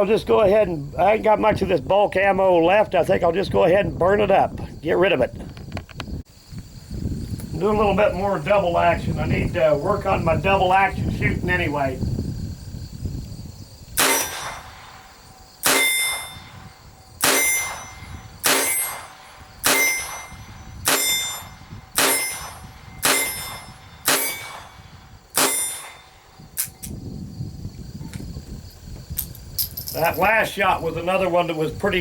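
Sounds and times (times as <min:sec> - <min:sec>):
revolver gunshots: 0:14.0 - 0:16.5, 0:17.2 - 0:26.1
ringing after gunshots: 0:14.0 - 0:26.4.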